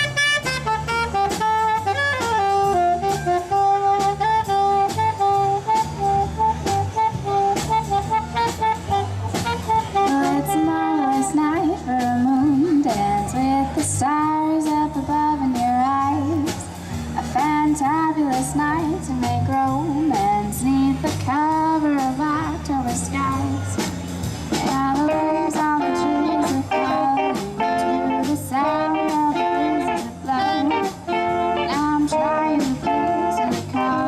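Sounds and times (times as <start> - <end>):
saxophone melody: 0.0 - 16.6, 17.4 - 34.0
band drums bass and guitars: 0.0 - 34.0
woman singing: 9.9 - 23.8, 24.6 - 34.0.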